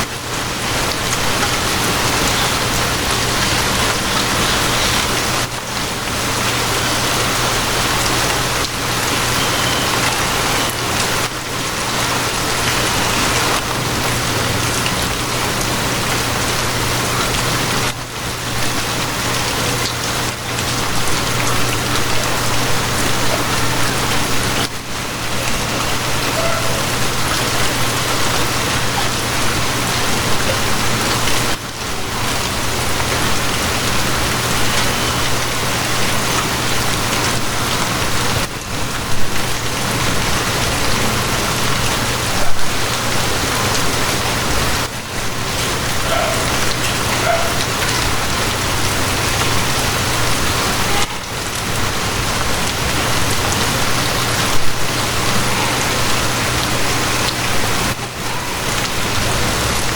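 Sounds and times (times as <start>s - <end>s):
heavy rain falling: 0.0s - 59.9s.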